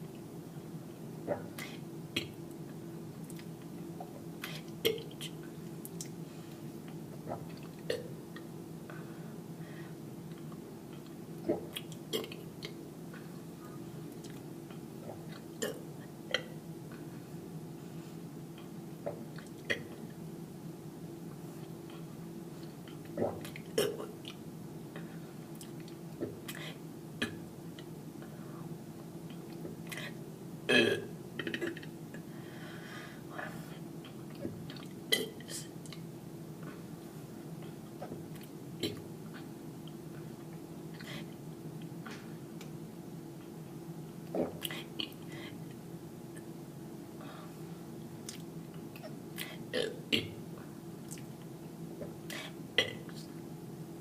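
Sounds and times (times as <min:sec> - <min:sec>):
steady low hum: 0:00.0 - 0:54.0
throat sounds: 0:01.2 - 0:02.4, 0:07.1 - 0:08.2, 0:10.4 - 0:13.4, 0:22.9 - 0:24.4, 0:44.3 - 0:45.6
person burping: 0:07.9 - 0:08.1, 0:30.7 - 0:31.9, 0:49.7 - 0:50.4.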